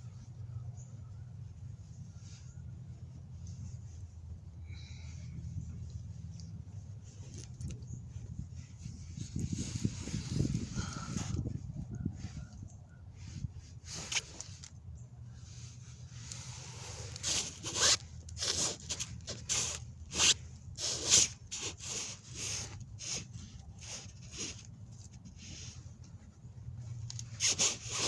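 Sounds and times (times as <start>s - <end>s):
fabric rustling and rubbing: 0.0s - 28.0s.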